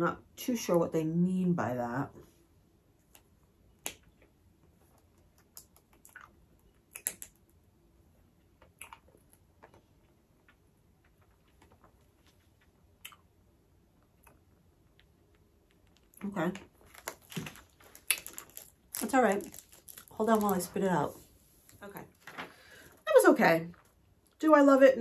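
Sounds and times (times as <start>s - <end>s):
candy clacking against teeth: 4.9s - 7.5s, 14.2s - 20.8s.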